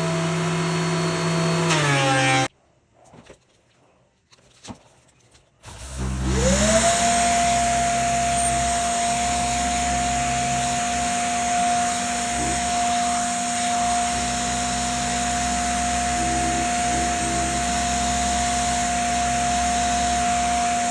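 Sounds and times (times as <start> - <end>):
power tool motor whining: 0.0 - 2.5, 5.7 - 20.9.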